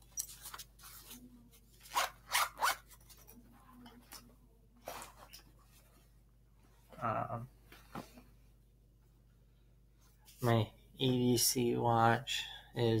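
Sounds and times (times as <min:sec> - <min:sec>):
bag zipper being pulled: 0:01.8 - 0:02.9.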